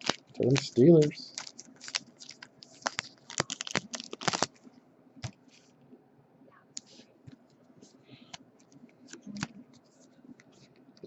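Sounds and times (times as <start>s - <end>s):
trading cards clicking and crinkling: 0.0s - 5.7s.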